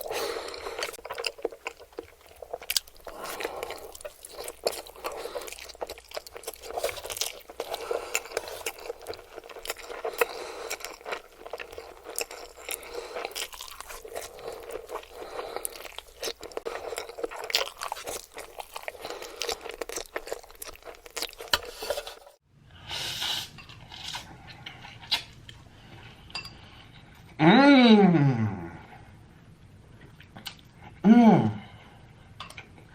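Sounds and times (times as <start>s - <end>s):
wet chewing and crunching: 0.0s - 22.4s.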